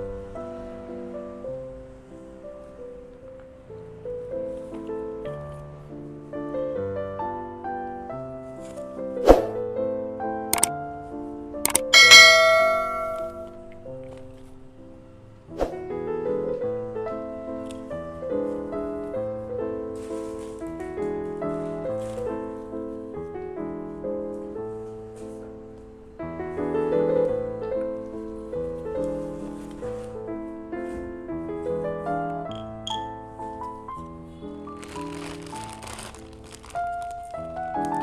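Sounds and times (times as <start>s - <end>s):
piano music: 0.0s - 38.0s
bright metallic ring: 11.7s - 13.6s.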